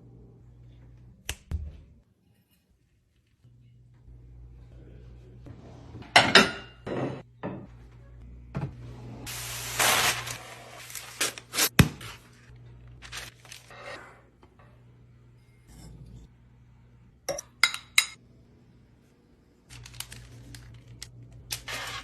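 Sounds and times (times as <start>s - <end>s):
packaging rustling: 9.6s - 12.2s, 13.0s - 13.7s, 19.7s - 22.0s.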